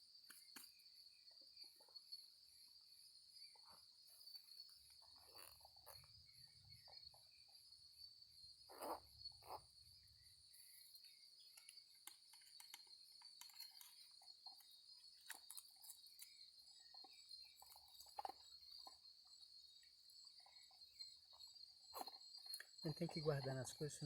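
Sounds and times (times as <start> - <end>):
crickets chirring: 0.0 - 24.0
small clicks and soft taps: 11.5 - 14.0.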